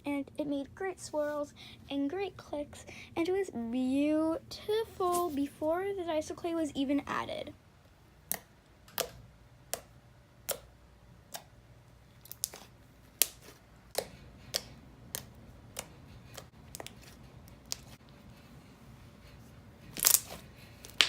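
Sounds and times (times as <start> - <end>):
slime clicking and popping: 8.3 - 10.7, 12.2 - 16.9.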